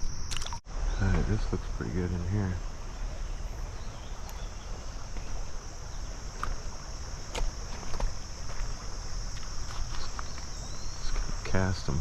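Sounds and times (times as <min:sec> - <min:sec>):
high-pitched insect chorus: 0:00.0 - 0:12.0
wind: 0:00.0 - 0:12.0
low rumble of water: 0:00.7 - 0:09.2.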